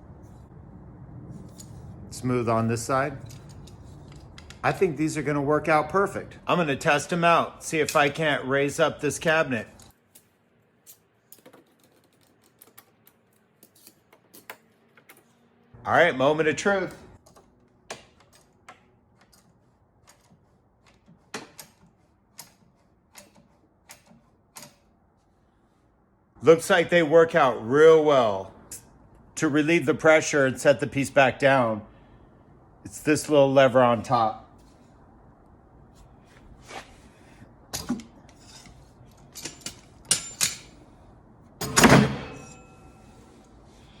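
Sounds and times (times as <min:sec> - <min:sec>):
metal jack clicks and clanks: 0:37.7 - 0:40.8
loud ringing metal clunk: 0:41.6 - 0:43.2.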